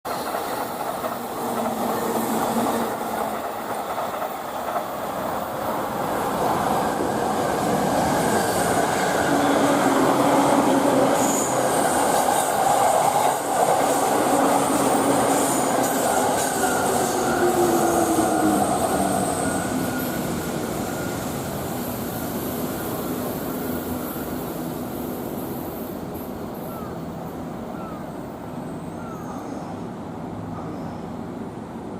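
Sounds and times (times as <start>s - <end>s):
electric train passing: 0.1s - 31.9s.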